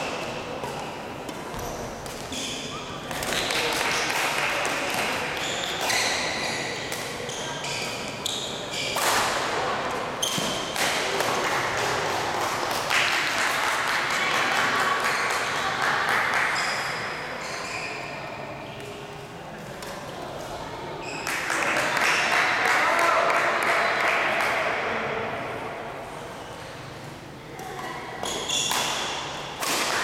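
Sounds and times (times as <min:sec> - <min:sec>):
shoes squeaking on court floor: 0:01.5 - 0:03.6, 0:05.4 - 0:09.1, 0:10.2 - 0:10.7, 0:16.6 - 0:18.2, 0:28.2 - 0:29.4
racket hitting ball: 0:28.7 - 0:30.0.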